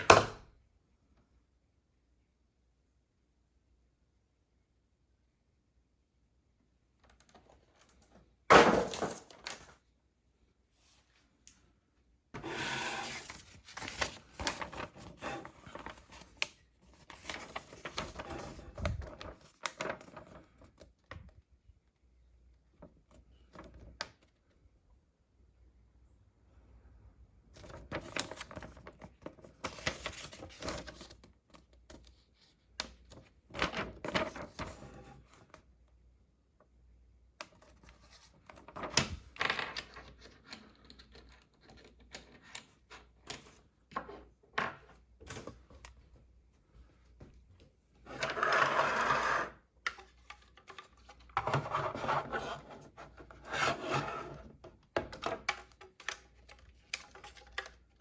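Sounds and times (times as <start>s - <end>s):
packaging rustling and scraping: 12.4s - 20.2s.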